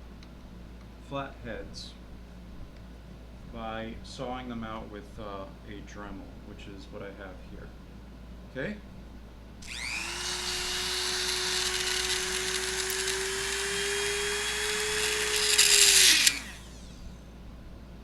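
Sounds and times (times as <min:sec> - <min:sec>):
rotary tool grinding metal: 0:09.6 - 0:17.2.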